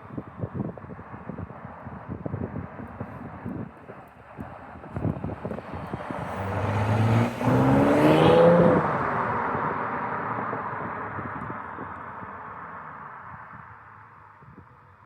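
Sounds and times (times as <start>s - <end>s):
car exhaust accelerating: 4.4s - 13.1s.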